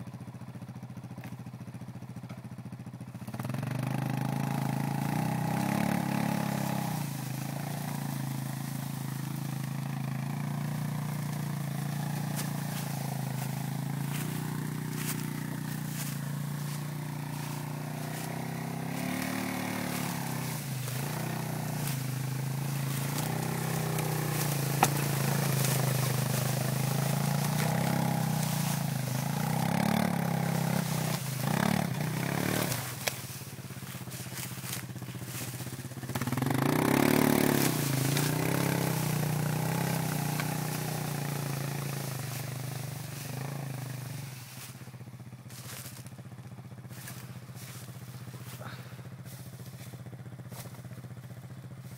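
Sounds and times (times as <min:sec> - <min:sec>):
small engine revving: 0:00.0 - 0:51.9
light crackles: 0:19.1 - 0:29.4.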